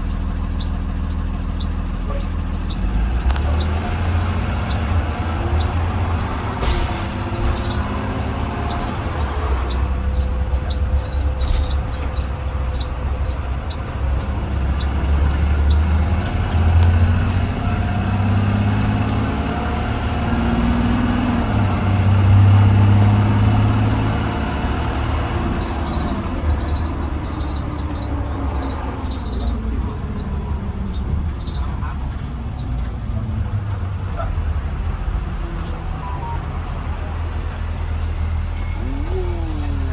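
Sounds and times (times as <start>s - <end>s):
bus engine rumbling: 0.0s - 39.9s
air brake hiss: 6.6s - 7.3s.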